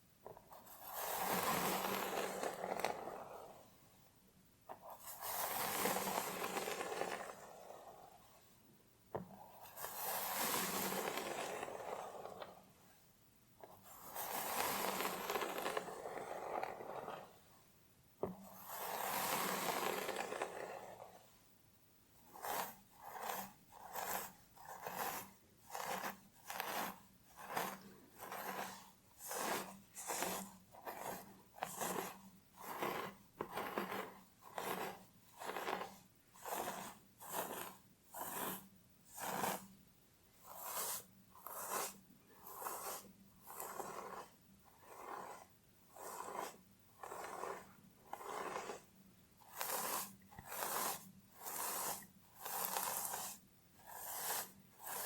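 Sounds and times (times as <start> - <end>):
fingernails scratching hair: 9.6 - 12.6, 13.9 - 17.4, 18.5 - 21.0, 22.3 - 39.7, 40.4 - 55.0.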